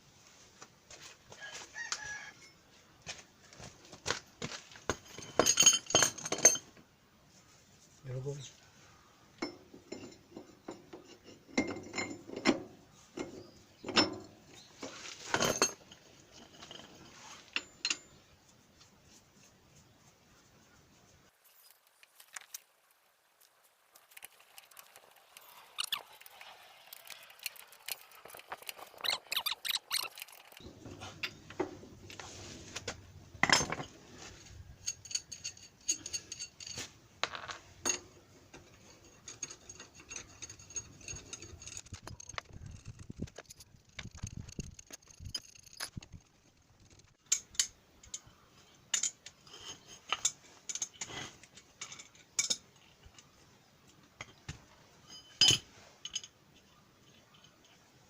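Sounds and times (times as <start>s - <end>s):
metal tools clinking and knocking: 4.9s - 6.8s, 9.4s - 18.4s, 24.0s - 31.8s, 33.4s - 53.3s, 54.0s - 57.9s.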